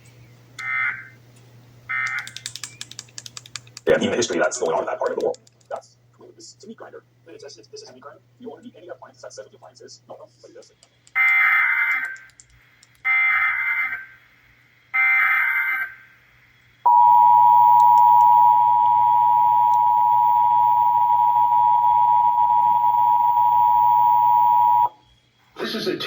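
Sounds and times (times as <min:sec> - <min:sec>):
harsh dual tone attention signal: 0:16.9 - 0:25.0
warbling data tones: 0:16.9 - 0:25.0.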